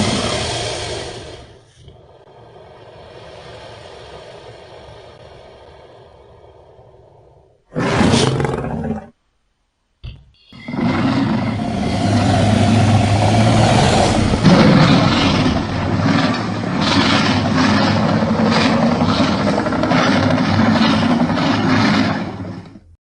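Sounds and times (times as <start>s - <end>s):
low rough creature growl: 7.7s - 9.2s, 10.6s - 22.6s.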